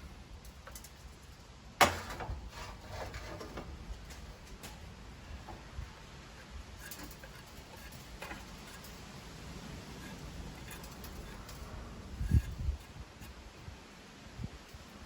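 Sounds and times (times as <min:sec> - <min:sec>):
metal chips ticking and rattling: 0:04.6 - 0:09.2, 0:10.1 - 0:13.7.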